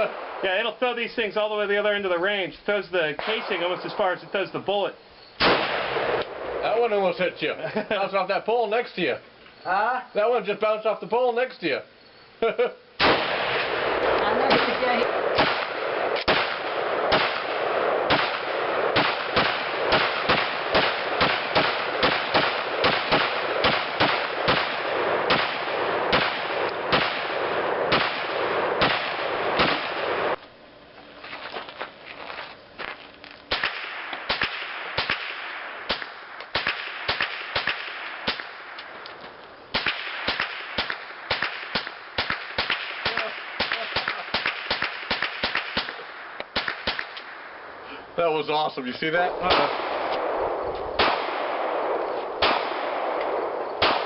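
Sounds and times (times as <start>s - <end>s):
steady hiss: 0.0s - 54.0s
rapid gunshots: 3.2s - 4.2s, 5.4s - 6.8s, 13.0s - 30.4s, 33.5s - 38.7s, 39.7s - 47.2s, 49.4s - 50.4s, 51.0s - 53.2s, 53.8s - 54.0s.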